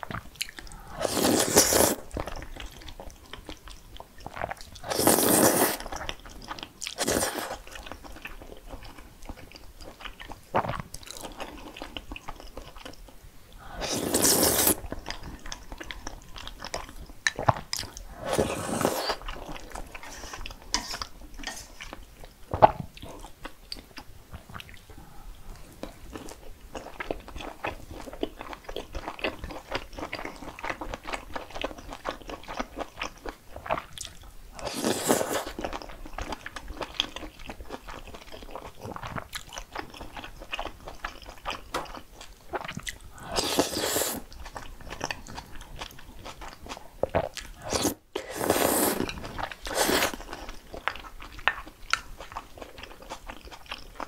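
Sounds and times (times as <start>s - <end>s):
crunching and chewing of food: 0.0s - 54.0s
crunchy bites or slurps: 1.0s - 2.0s, 4.8s - 5.9s, 13.8s - 14.8s, 43.2s - 44.2s, 47.2s - 50.2s.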